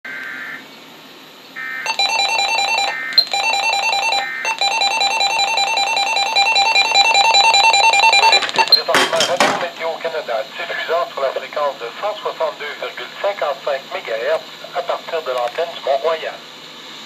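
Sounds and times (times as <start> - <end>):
screechy digital data bursts: 1.9 - 8.8
fast electronic beeps: 1.9 - 8.9.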